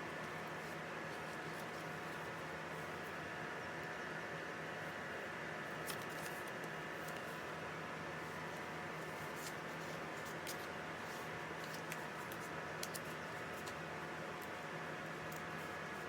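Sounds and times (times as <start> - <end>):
steady background hum: 0.0 - 16.0
paper and plastic rustling: 5.8 - 7.4.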